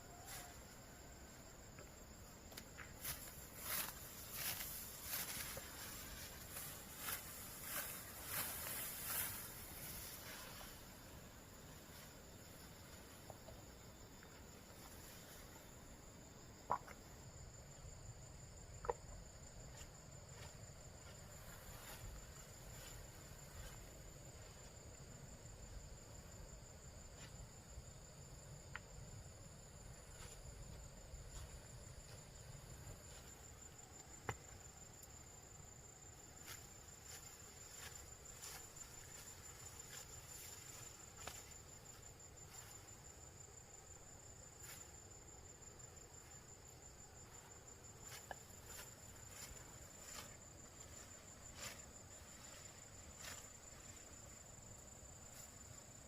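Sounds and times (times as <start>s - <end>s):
insects trilling: 0.0s - 56.0s.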